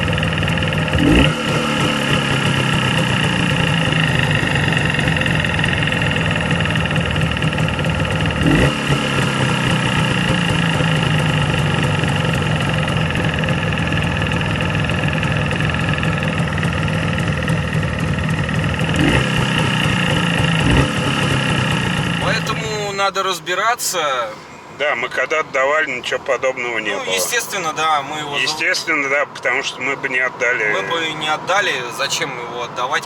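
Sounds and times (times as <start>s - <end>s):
two-stroke engine idling: 0.0s - 24.2s.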